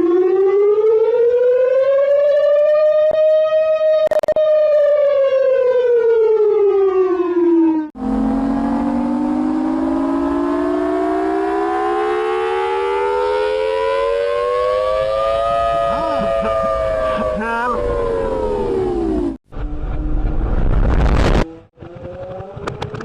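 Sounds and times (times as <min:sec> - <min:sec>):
siren sliding down in pitch: 0:00.0 - 0:23.0
two-note siren rising in pitch: 0:00.0 - 0:23.0.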